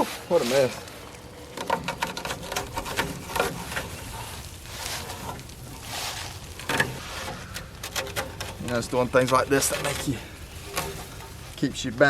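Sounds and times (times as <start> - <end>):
clicking and scraping: 0.0 - 11.7.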